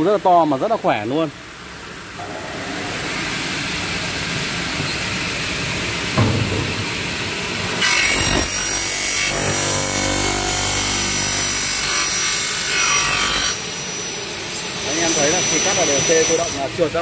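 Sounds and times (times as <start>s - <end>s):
sharp knock: 6.2s - 7.0s.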